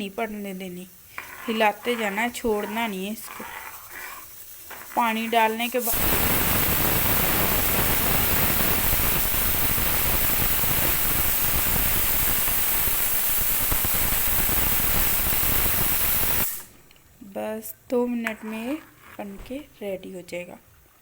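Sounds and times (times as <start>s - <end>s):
batter sizzling in a hot pan: 0.0s - 16.8s.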